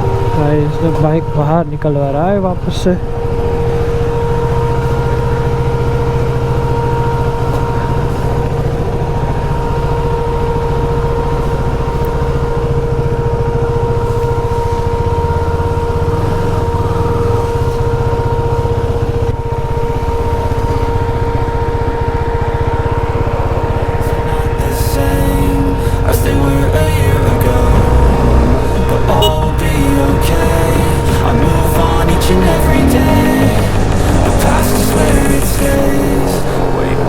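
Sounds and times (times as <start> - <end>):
vehicle engine running steadily: 0.0 - 37.0.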